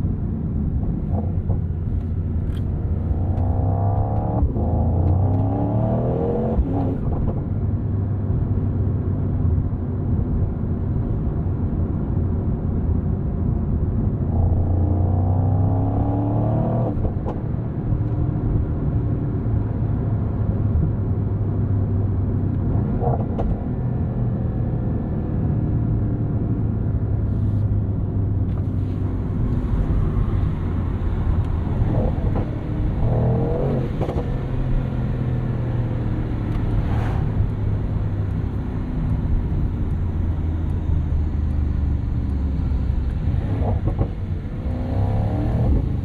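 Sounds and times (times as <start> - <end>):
car engine accelerating: 22.5 - 46.0.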